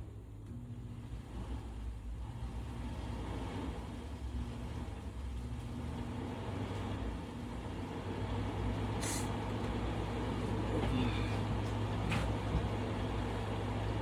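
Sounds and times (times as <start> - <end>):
server machine hum: 0.0 - 14.0
short hiss: 9.0 - 9.4.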